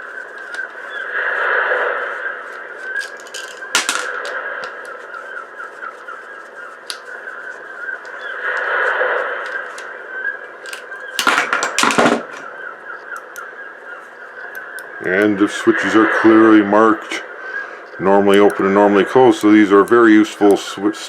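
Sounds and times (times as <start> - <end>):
faint chirping: 0.0 - 21.0
loud knocks of small parts: 3.0 - 4.4, 10.7 - 12.5.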